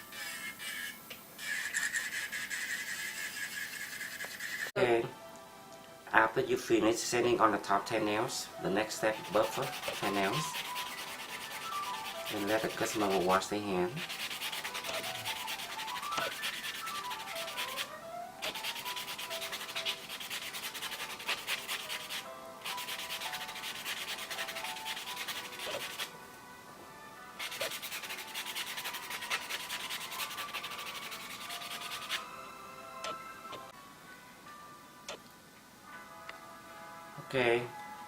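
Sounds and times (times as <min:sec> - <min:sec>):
nail buffer rubbing: 0:00.2 - 0:04.7, 0:09.1 - 0:26.1, 0:27.4 - 0:32.2.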